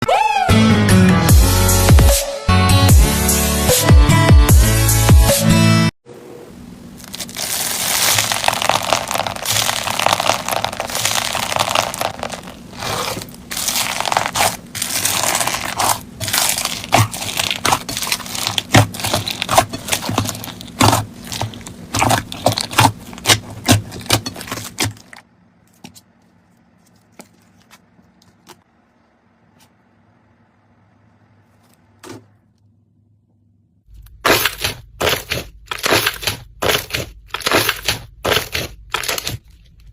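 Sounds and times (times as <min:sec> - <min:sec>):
slime crackling and popping: 0:07.0 - 0:25.2, 0:34.2 - 0:39.4.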